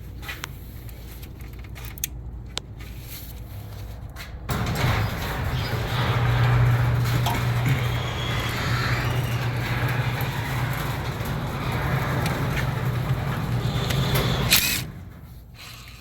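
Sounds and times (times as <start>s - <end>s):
car engine cranking: 4.5s - 16.0s.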